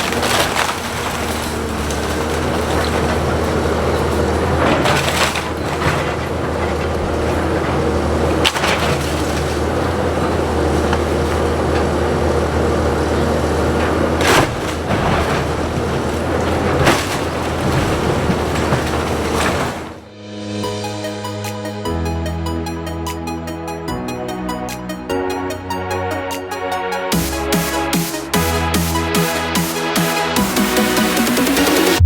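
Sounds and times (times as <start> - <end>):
timber cracking and splintering: 0.0 - 20.0
heavy demolition machinery running: 0.0 - 32.0.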